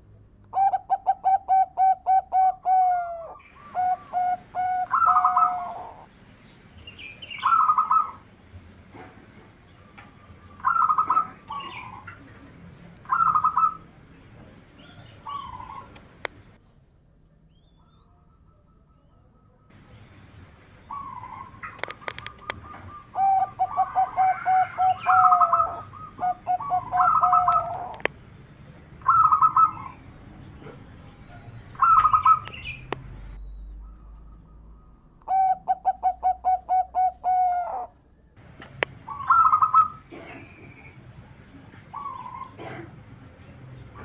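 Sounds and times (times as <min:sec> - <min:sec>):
doves cooing: 0:00.5 - 0:06.1, 0:07.2 - 0:08.3, 0:09.6 - 0:16.6, 0:20.7 - 0:28.1, 0:29.0 - 0:33.0, 0:33.8 - 0:38.0, 0:38.7 - 0:44.0
sharp clicks: 0:21.6 - 0:22.6.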